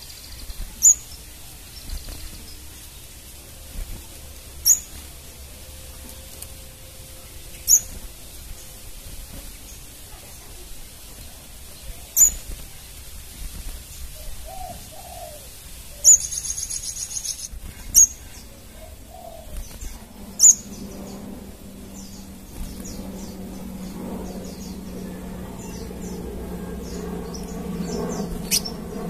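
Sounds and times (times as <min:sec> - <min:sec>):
bird chips: 0:00.0 - 0:29.0
low steady hum: 0:00.0 - 0:29.0
bird trill: 0:04.6 - 0:05.0, 0:07.3 - 0:08.0, 0:14.4 - 0:29.0.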